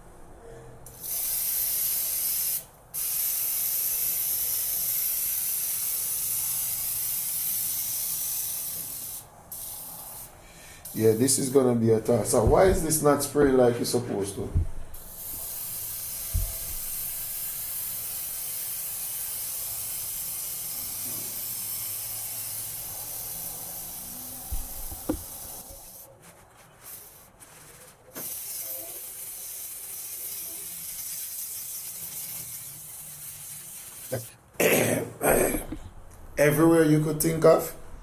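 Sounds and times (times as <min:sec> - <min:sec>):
spray can hissing: 0:00.9 - 0:11.6, 0:14.9 - 0:26.1, 0:26.8 - 0:27.3, 0:28.1 - 0:34.3.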